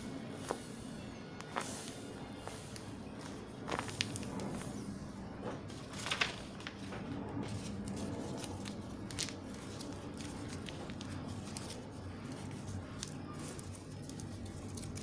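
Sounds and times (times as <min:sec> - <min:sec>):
low background hum: 0:00.0 - 0:15.0
plastic bag crinkling: 0:05.7 - 0:06.9.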